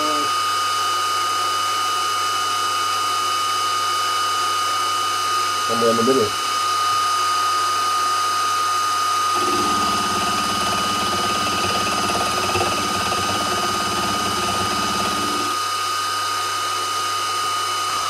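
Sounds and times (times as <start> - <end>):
milling machine whining: 9.3 - 15.6
end mill chattering on metal: 9.4 - 15.6.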